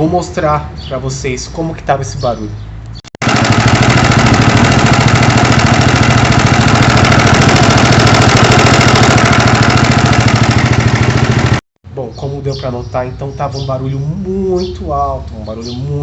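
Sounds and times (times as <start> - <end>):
motorcycle engine running: 3.2 - 11.6
rapid mechanical knocking clatter: 3.2 - 11.6.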